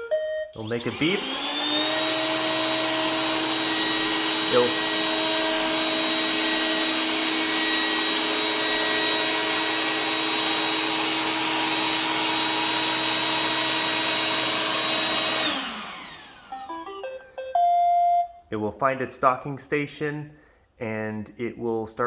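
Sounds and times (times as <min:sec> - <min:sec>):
robot vacuum running: 0:00.6 - 0:16.8.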